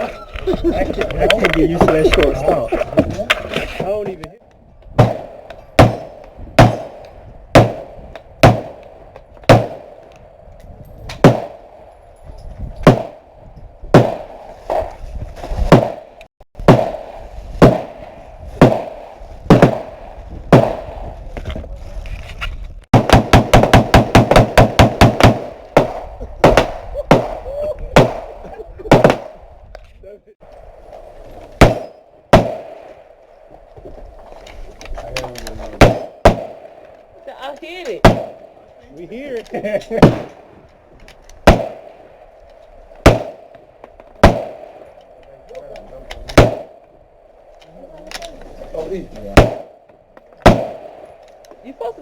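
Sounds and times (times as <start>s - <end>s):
pistol gunshots: 5.0s - 8.9s, 9.5s - 10.1s, 11.2s - 11.7s, 12.8s - 13.3s, 13.9s - 14.4s, 16.7s - 18.0s, 18.6s - 21.0s, 22.9s - 27.4s, 28.0s - 29.4s, 31.6s - 33.0s, 35.8s - 36.9s, 38.0s - 38.6s, 40.0s - 40.5s, 41.4s - 42.2s, 43.0s - 43.6s, 44.2s - 45.0s, 46.3s - 46.9s, 49.3s - 49.8s, 50.4s - 51.3s.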